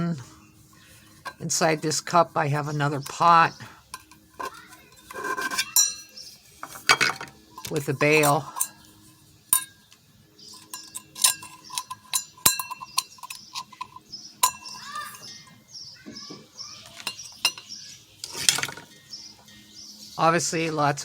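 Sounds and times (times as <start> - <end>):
birds chirping: 0.0 - 21.0
metal pots clinking together: 0.7 - 3.2, 3.9 - 9.9, 10.5 - 15.4, 16.8 - 19.0.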